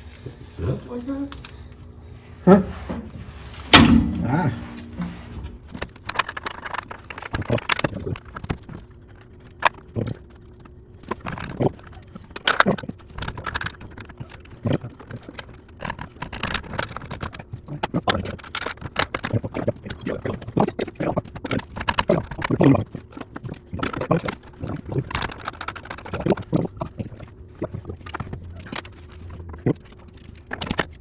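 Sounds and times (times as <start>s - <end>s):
hand tools clanking on metal: 2.5s - 5.9s.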